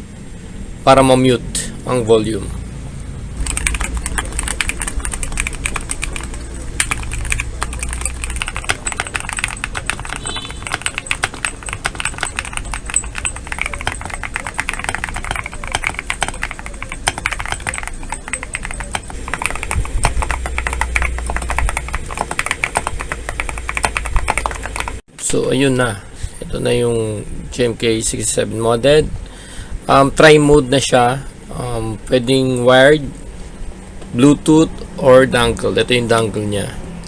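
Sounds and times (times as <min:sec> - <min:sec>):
mechanical keyboard typing: 0:03.4 - 0:25.0.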